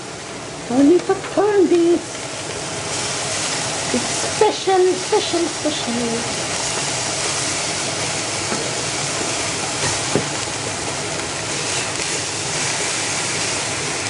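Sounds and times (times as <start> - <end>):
food sizzling in a frying pan: 0.0 - 14.0.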